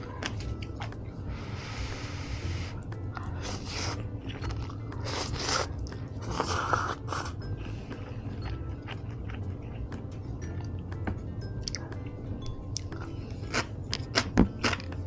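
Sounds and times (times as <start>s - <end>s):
person crunching and chewing: 3.4s - 7.4s, 12.8s - 14.9s.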